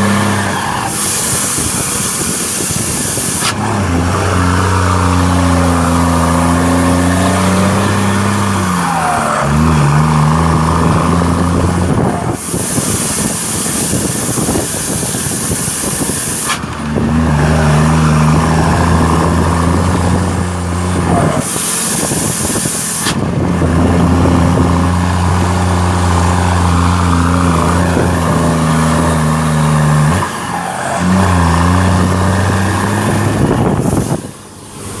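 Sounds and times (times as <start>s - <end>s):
truck diesel engine rumbling: 0.0s - 35.0s
loud hiss: 0.6s - 3.6s, 12.3s - 16.7s, 21.4s - 23.2s.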